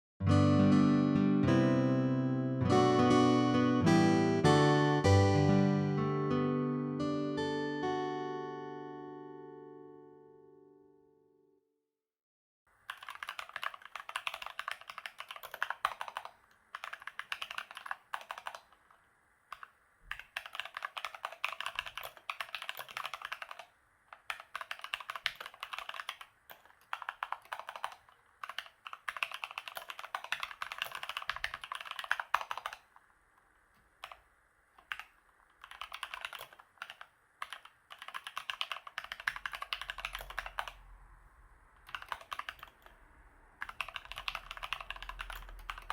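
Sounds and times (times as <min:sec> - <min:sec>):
mechanical keyboard typing: 0:12.8 - 0:33.1, 0:34.0 - 0:34.2, 0:34.8 - 0:40.8, 0:41.8 - 0:43.0, 0:43.6 - 0:45.9.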